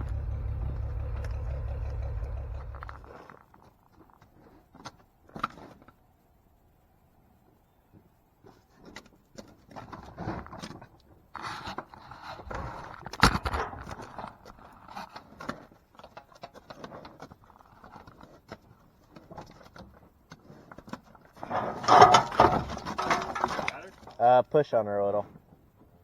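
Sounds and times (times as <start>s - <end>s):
cattle scuffing and knocking: 15.4s - 24.2s.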